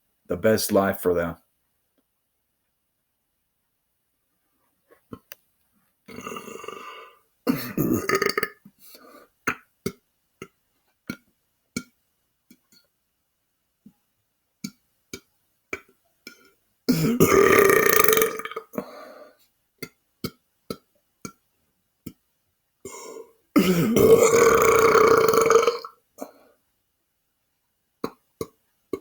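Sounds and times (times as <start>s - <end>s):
man belching: 6.1s - 8.6s, 16.9s - 18.8s, 22.9s - 25.9s.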